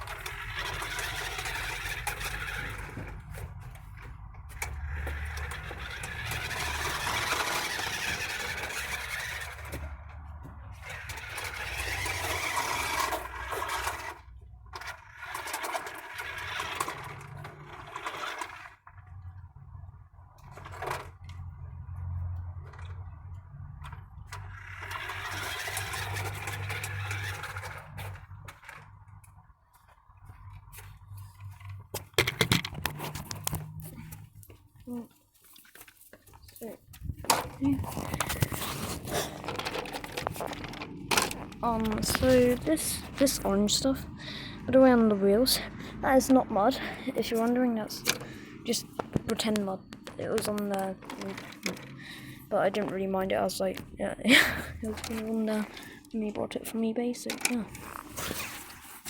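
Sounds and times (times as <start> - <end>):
toy car motor whirring: 0.0 - 3.5, 4.6 - 10.1, 10.8 - 19.0, 24.3 - 28.8, 37.3 - 53.6, 54.3 - 56.1, 57.2 - 59.0
wheels scraping over ground: 0.0 - 59.0.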